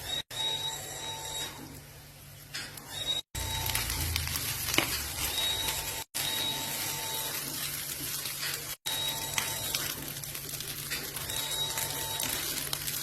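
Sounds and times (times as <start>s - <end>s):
food sizzling in frying pan: 3.3s - 13.0s.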